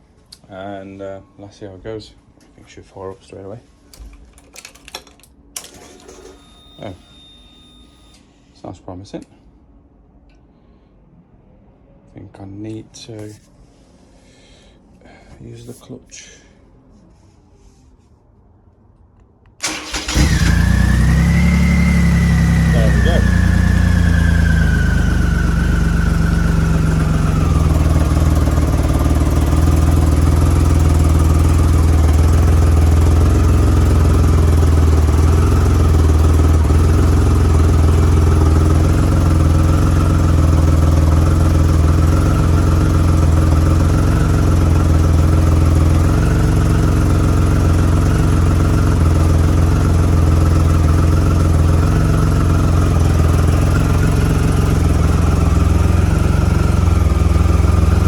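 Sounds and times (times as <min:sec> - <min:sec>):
motorcycle engine idling: 0:19.6 - 0:58.0.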